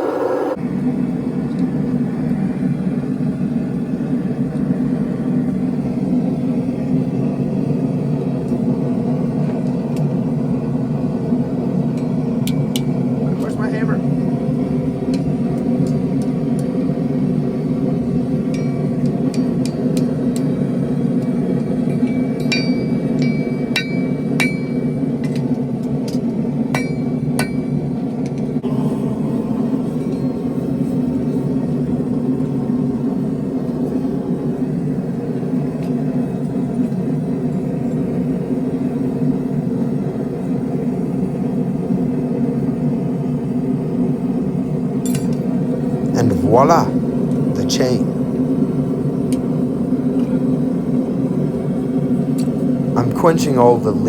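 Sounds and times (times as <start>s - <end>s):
hammer striking steel on anvil: 18.5s - 20.1s, 21.9s - 25.4s, 26.7s - 27.8s
low rumble: 28.6s - 34.2s.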